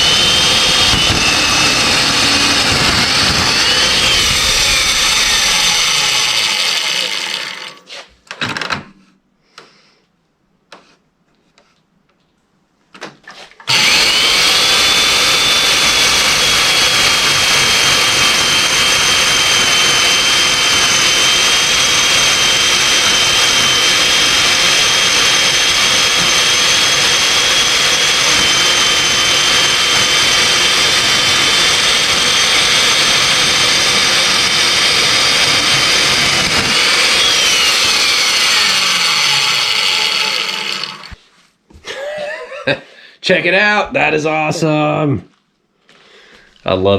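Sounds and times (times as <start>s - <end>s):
cutting chain cutting wood: 0.0s - 7.9s, 13.7s - 41.2s
electric motor whining: 0.0s - 7.9s, 13.7s - 41.2s.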